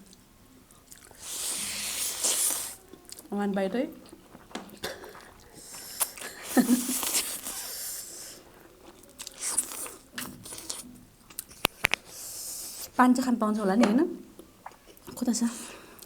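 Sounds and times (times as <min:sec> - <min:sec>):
biting and chewing noodles: 0:00.8 - 0:03.3, 0:04.0 - 0:13.0
wet mouth noises: 0:00.9 - 0:03.3, 0:04.0 - 0:13.0, 0:14.4 - 0:15.1.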